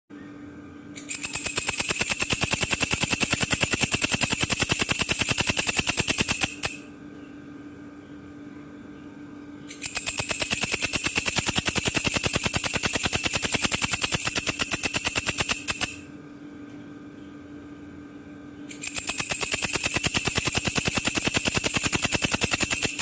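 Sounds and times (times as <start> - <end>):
katydid stridulating clicks: 1.0 - 6.8, 9.7 - 16.0, 18.7 - 23.0.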